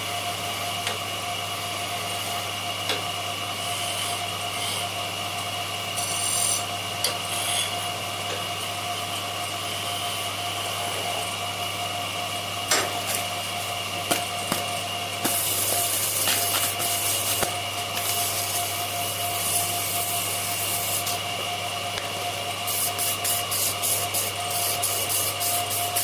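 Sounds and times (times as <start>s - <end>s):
power tool abrading wood: 14.0s - 22.3s.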